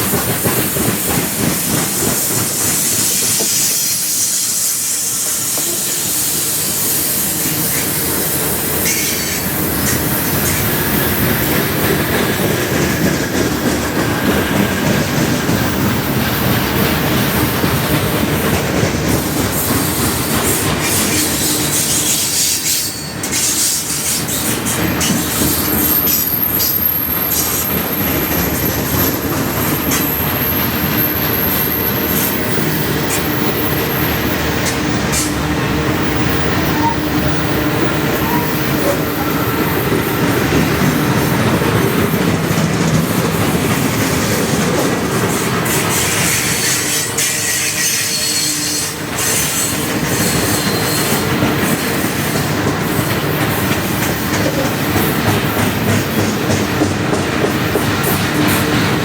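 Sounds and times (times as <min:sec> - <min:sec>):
freight train wheels clattering: 0:00.0 - 0:59.0
high wheel squeal: 0:02.3 - 0:10.9, 0:20.6 - 0:40.4, 0:45.7 - 0:52.0.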